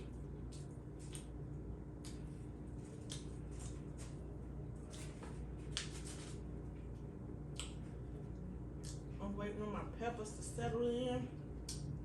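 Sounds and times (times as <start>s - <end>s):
crackly chewing sounds: 0.0s - 9.2s
steady low hum: 0.0s - 12.0s.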